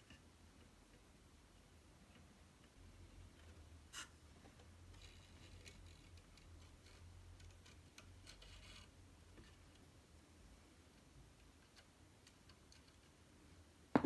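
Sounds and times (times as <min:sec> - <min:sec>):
light scratching and clicking: 0:02.1 - 0:09.9, 0:10.9 - 0:13.6.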